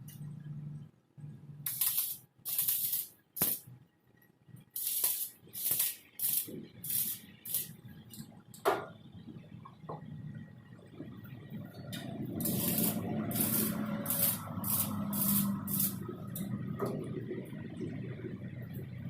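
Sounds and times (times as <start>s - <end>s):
welder hissing bursts: 1.7s - 3.6s, 4.8s - 7.7s, 12.4s - 16.0s.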